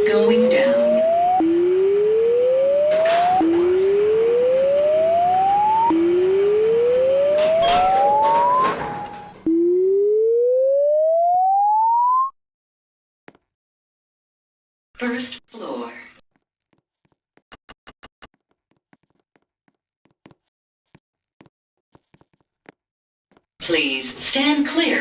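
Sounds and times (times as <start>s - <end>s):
electronic rising siren tone: 0.0s - 12.4s.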